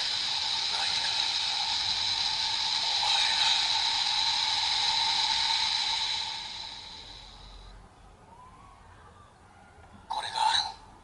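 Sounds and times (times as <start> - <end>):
toy belt sound effect: 0.0 - 7.6.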